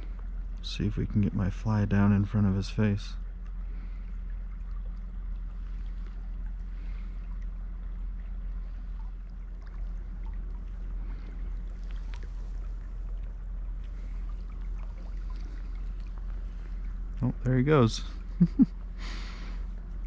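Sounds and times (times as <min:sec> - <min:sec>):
low rumble: 0:00.0 - 0:20.0
faint ticks: 0:03.2 - 0:17.2.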